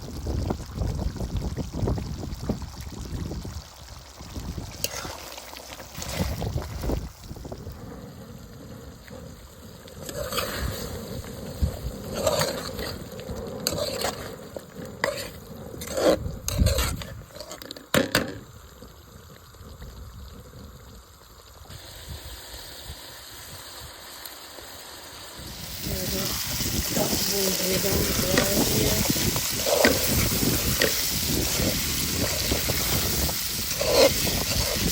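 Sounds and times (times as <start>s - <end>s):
meat sizzling in a pot: 0.0s - 34.9s
spoon scraping and knocking pot: 15.0s - 18.4s.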